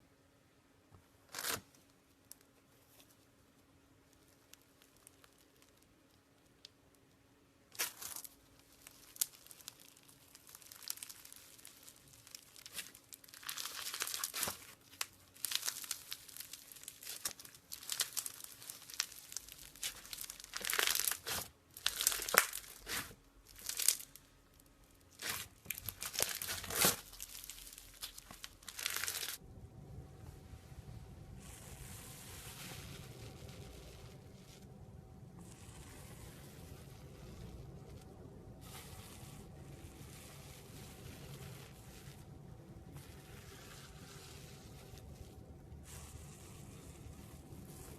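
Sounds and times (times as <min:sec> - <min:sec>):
slime crackling and popping: 0:04.2 - 0:06.8, 0:07.7 - 0:29.4.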